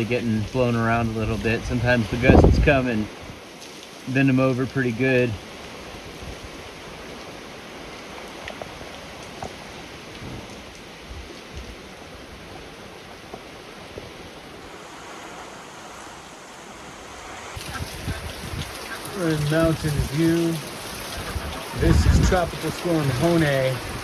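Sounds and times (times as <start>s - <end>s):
wind buffets: 0.0s - 3.5s, 5.4s - 24.0s
rain hissing: 0.0s - 24.0s
rain drop ticks: 7.9s - 11.7s, 17.6s - 24.0s.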